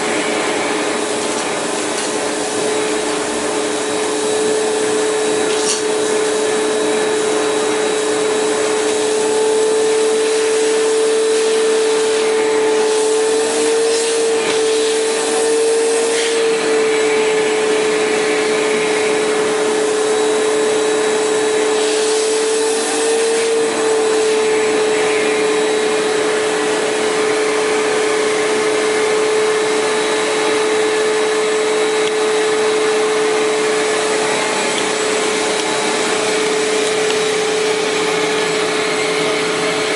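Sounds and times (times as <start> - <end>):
vacuum motor whine: 0.0 - 39.9.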